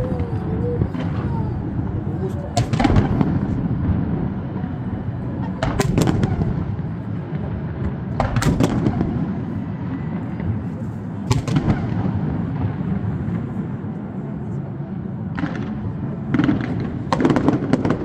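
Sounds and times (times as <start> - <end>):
fireworks bangs and crackles: 0.0 - 13.6, 15.3 - 18.0
low rumble: 0.0 - 13.6.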